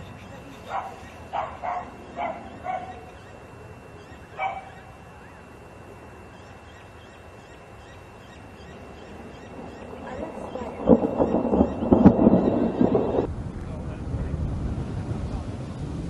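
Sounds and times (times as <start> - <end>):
steady background noise: 0.0 - 16.0
animal barking: 0.6 - 3.3, 4.0 - 5.0.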